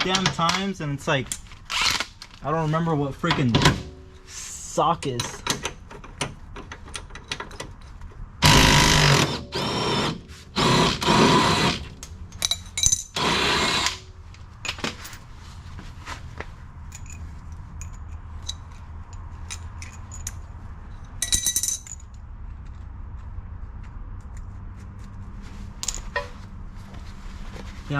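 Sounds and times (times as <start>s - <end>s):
power wrench bursts: 1.7s - 2.1s, 8.4s - 12.0s, 13.1s - 14.1s.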